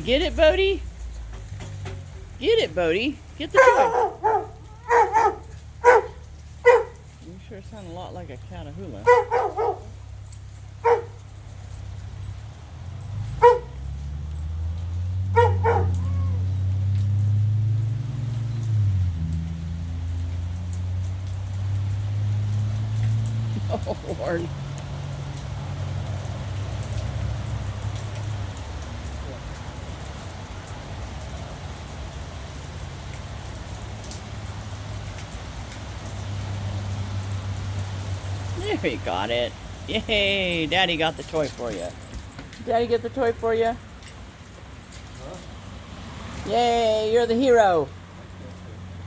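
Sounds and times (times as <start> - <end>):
steady rain falling: 0.0 - 49.0
dog barking: 3.5 - 7.1, 9.0 - 10.0, 10.8 - 11.2, 13.3 - 13.8, 15.3 - 16.4.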